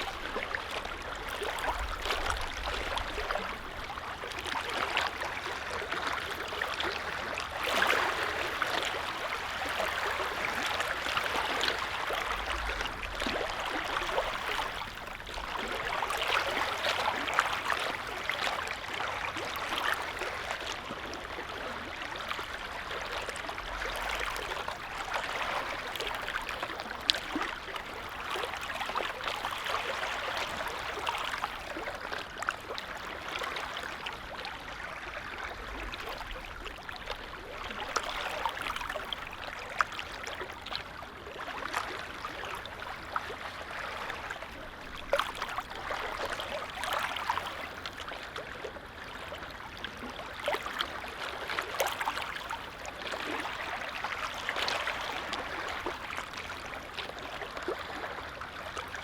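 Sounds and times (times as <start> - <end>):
lake waves lapping: 0.0 - 59.0.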